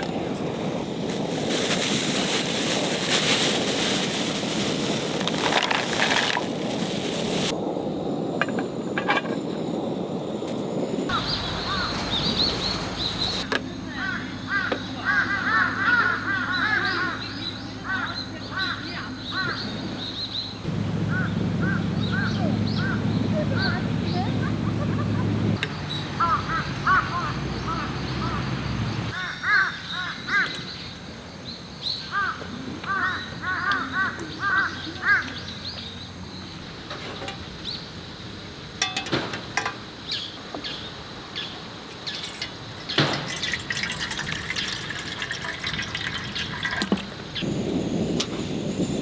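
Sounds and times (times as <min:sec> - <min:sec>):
birds calling: 0:11.1 - 0:24.8, 0:25.6 - 0:38.5, 0:39.8 - 0:47.6.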